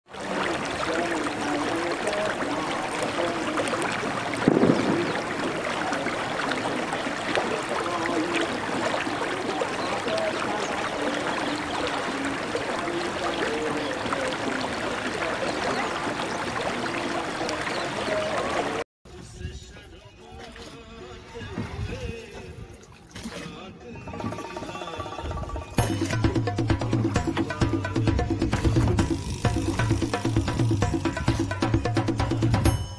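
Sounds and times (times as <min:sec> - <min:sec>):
river water flowing: 0:00.0 - 0:18.8, 0:20.5 - 0:32.0
faint voice-like tones: 0:00.1 - 0:22.7.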